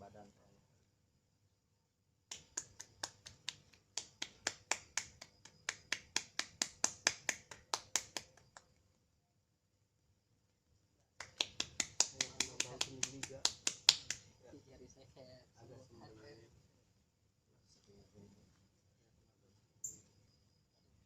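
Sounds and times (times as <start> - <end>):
fingers slapping bare skin: 2.3 - 8.7, 11.2 - 14.3.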